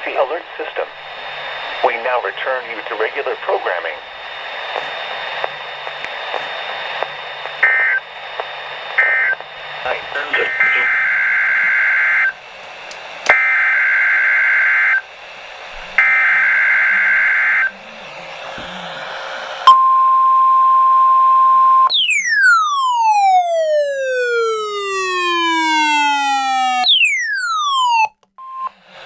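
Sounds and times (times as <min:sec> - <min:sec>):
buzzing data tone bursts: 0:07.6 - 0:08.0, 0:09.0 - 0:09.4, 0:10.3 - 0:12.3
steady warning alarm beep: 0:07.6 - 0:08.0, 0:09.0 - 0:09.4, 0:10.3 - 0:12.3, 0:13.3 - 0:15.0, 0:16.0 - 0:17.8, 0:19.7 - 0:22.8.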